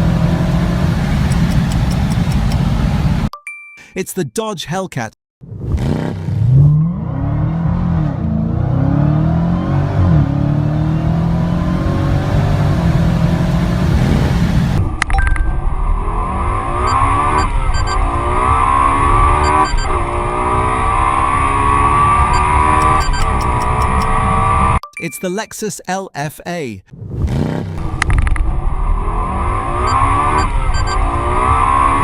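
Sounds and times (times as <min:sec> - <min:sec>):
sports car accelerating with upshifts: 0:00.0 - 0:02.8, 0:05.7 - 0:14.8, 0:27.3 - 0:32.0
car engine revving: 0:00.0 - 0:03.2, 0:05.6 - 0:14.8.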